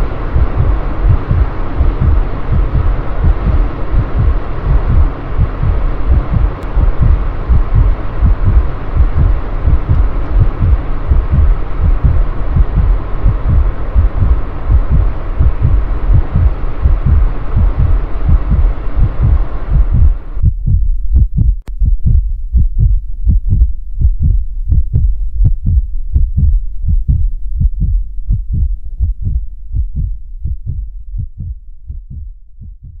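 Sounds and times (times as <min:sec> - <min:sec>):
rushing noise: 0:00.0 - 0:20.4
heartbeat thumps: 0:00.0 - 0:33.0.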